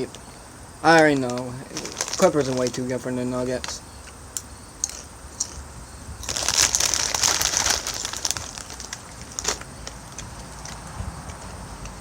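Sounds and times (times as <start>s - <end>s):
chip bag crinkling: 0.8s - 4.2s, 4.8s - 5.6s, 6.2s - 11.5s.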